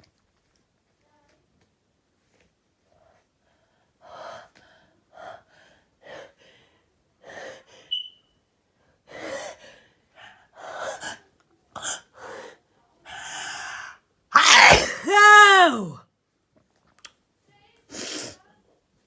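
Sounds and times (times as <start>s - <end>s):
sharp sound with squeak: 7.9s - 8.2s.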